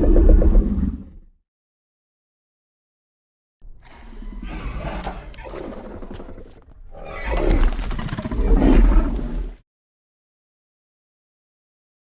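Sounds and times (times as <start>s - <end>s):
dinosaur growling roars: 3.8s - 9.6s.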